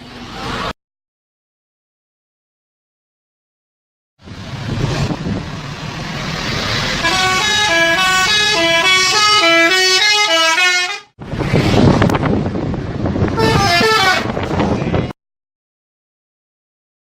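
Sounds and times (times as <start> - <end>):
road noise: 0.0 - 0.8, 4.2 - 15.2
traffic noise: 0.0 - 0.8, 4.2 - 15.2
bus musical horn: 6.9 - 11.2, 13.3 - 15.1.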